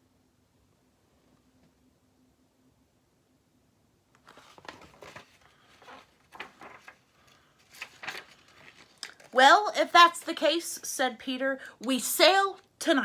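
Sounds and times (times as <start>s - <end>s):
paper rustling and crinkling: 4.2s - 10.6s.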